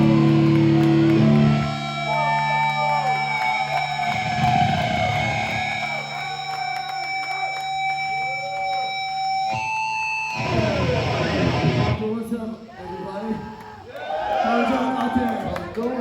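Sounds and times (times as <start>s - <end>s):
low amp hum: 0.0s - 6.5s
electric guitar held notes: 0.0s - 12.0s.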